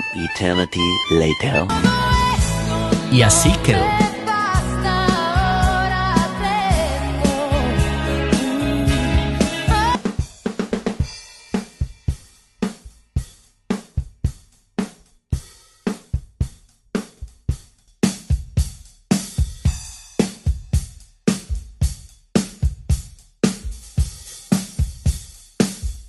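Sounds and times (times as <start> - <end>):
drum kit playing: 2.4 - 5.6, 8.4 - 26.0.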